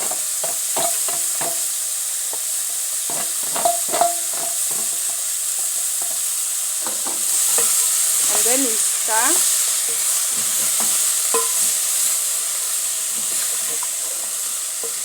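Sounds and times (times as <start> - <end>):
vegetables sizzling in hot oil: 0.0 - 15.0
utensil scraping and knocking pan: 3.1 - 5.2, 9.6 - 11.9, 13.1 - 15.0.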